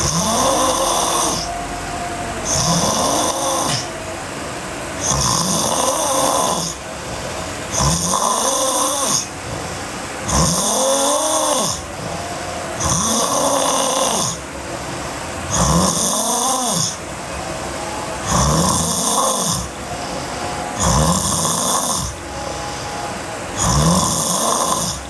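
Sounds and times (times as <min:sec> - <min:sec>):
girl snoring: 0:00.0 - 0:01.6, 0:02.4 - 0:03.9, 0:07.7 - 0:11.8, 0:15.5 - 0:17.0, 0:20.8 - 0:22.2, 0:23.6 - 0:25.0.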